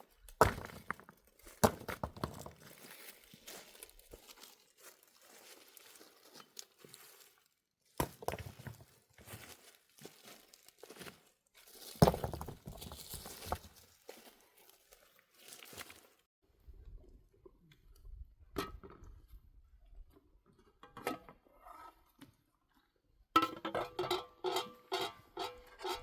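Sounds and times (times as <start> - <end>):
rustling and crunching handling: 0.0 - 16.3.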